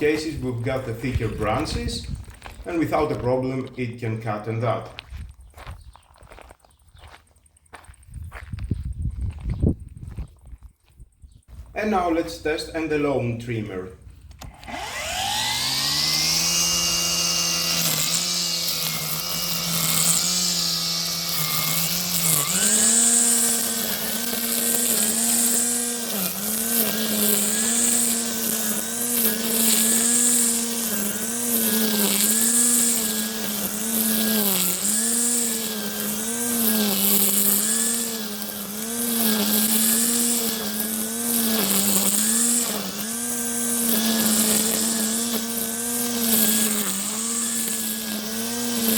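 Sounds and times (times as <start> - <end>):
line trimmer motor whine: 0.0 - 4.6, 14.3 - 48.9
trimmer line hissing swishes: 14.4 - 48.9.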